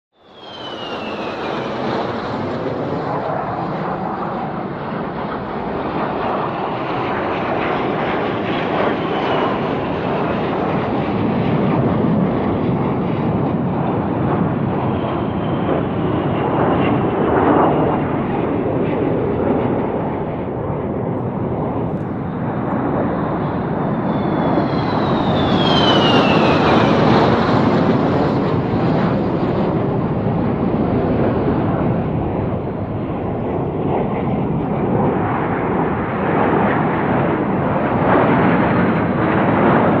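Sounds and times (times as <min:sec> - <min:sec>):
jet engine noise: 0:00.1 - 0:40.0
high whine falling in pitch: 0:00.3 - 0:02.4, 0:23.9 - 0:27.4.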